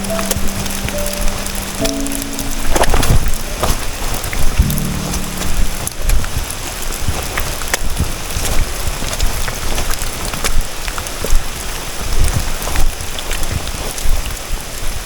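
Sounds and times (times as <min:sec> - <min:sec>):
raindrops ticking sharply: 0:00.0 - 0:04.0, 0:04.6 - 0:06.6
steady rain: 0:00.0 - 0:15.0
low rumble: 0:04.6 - 0:06.7.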